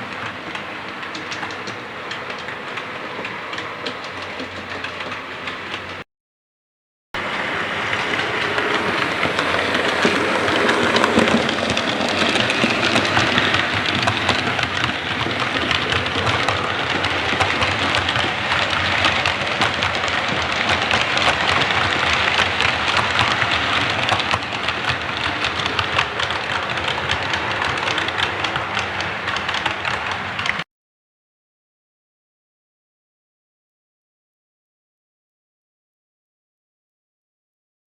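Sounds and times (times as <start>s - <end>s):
model train wheels rumbling: 0.0s - 6.0s, 7.2s - 30.6s
small track clicks: 0.0s - 6.0s, 7.2s - 30.6s.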